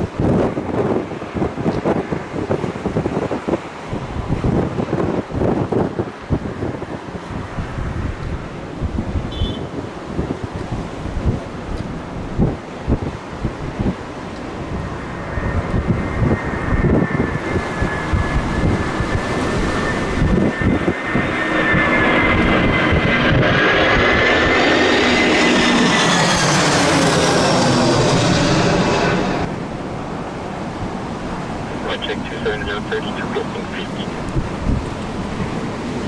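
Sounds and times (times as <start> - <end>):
wind buffeting microphone: 0.0 - 33.2, 34.0 - 36.0
airliner engines whining: 11.6 - 36.0.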